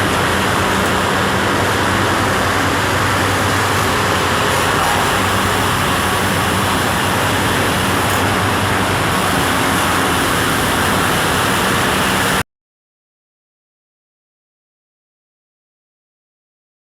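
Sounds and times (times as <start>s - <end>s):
wood-processing machinery running: 0.0s - 12.4s.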